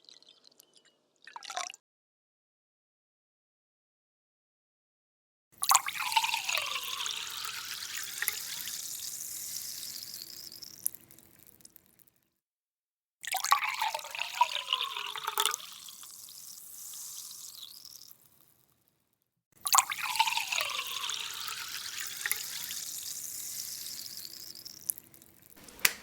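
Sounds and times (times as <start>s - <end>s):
water splashing and running: 25.6s - 26.0s.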